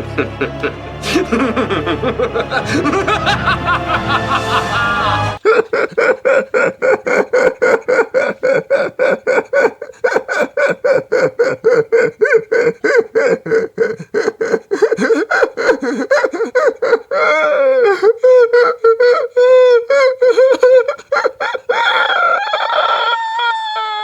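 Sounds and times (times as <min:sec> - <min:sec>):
person laughing: 0:00.0 - 0:24.0.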